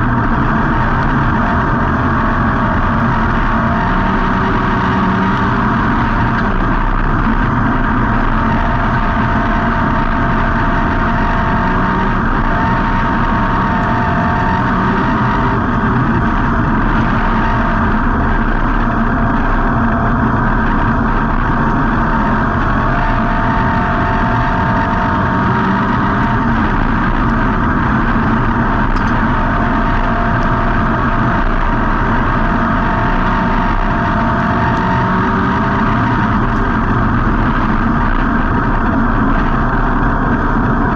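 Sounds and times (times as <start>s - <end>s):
race car engine running hard: 0.0s - 40.9s.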